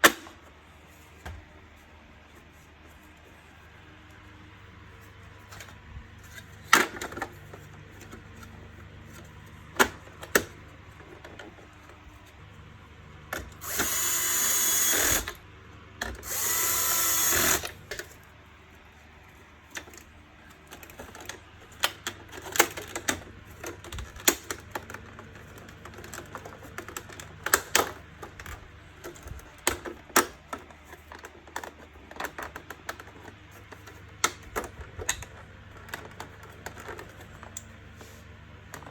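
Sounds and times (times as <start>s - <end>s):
plastic parts clicking and knocking: 5.5s - 12.3s, 19.7s - 37.7s, 38.7s - 38.9s
electric screwdriver running: 13.6s - 15.4s, 16.2s - 17.8s.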